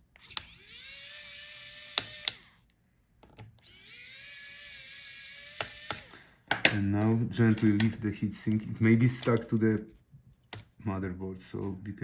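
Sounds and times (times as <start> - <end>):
electric screwdriver motor whine: 0.2 - 2.6, 3.6 - 6.2.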